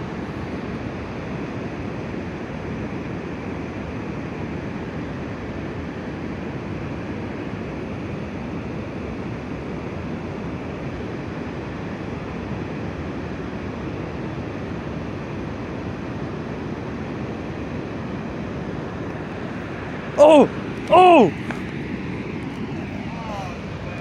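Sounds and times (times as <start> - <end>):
river water flowing: 18.1 - 24.0.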